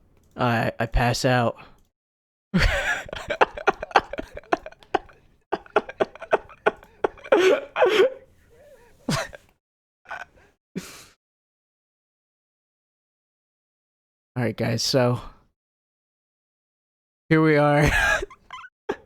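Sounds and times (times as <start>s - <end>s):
man coughing: 2.6s - 8.2s, 9.1s - 9.4s.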